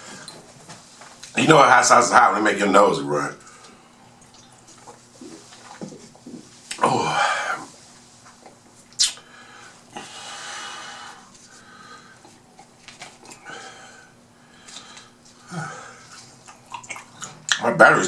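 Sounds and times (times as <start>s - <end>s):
man breathing hard: 9.2s - 12.3s, 13.3s - 16.2s.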